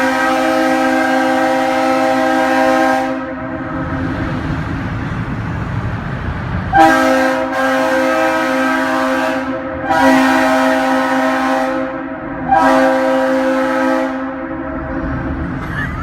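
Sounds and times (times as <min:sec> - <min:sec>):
air horn chord blasts: 0:00.0 - 0:03.4, 0:06.7 - 0:14.5.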